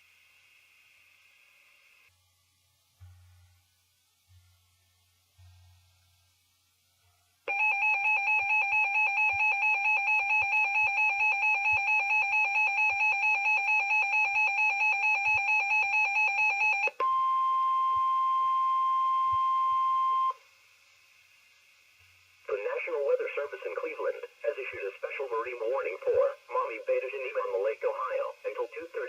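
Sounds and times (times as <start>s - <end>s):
steady alarm tone: 7.5s - 17.0s.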